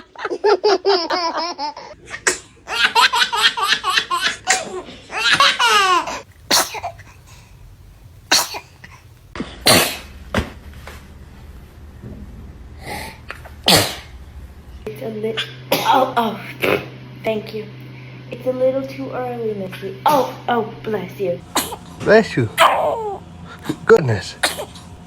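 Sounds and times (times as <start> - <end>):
child laughing: 0.0 - 7.0
toddler sneezing: 6.0 - 7.2, 8.3 - 10.1, 13.6 - 14.1, 21.5 - 21.9, 24.4 - 24.8.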